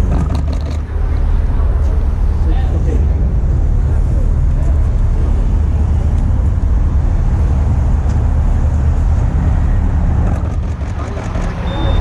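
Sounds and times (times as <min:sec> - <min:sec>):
traffic rumble: 0:00.0 - 0:12.0.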